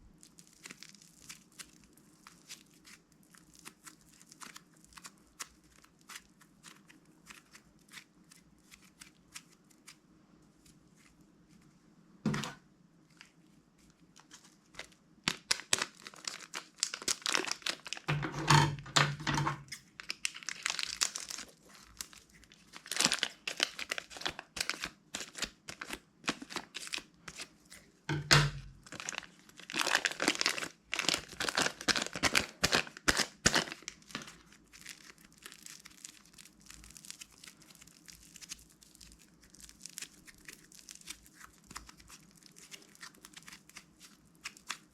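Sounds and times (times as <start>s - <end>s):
slime crackling and clicking: 27.7s - 44.9s.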